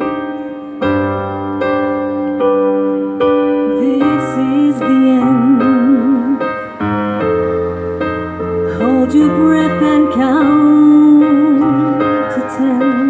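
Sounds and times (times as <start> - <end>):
melody with wide vibrato: 0.0 - 13.0
sustained piano chords: 0.0 - 13.0.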